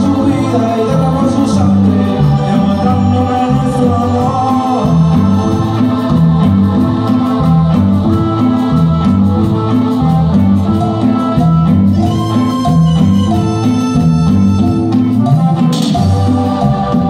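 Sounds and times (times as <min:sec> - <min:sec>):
band music with stepping bass line: 0:00.0 - 0:17.0.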